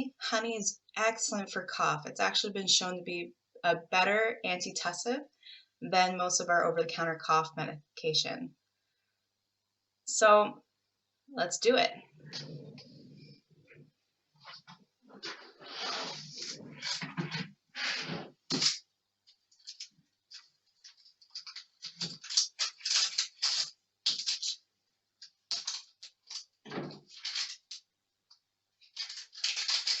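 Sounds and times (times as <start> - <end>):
onion skin crackling and tearing: 28.9 - 30.0.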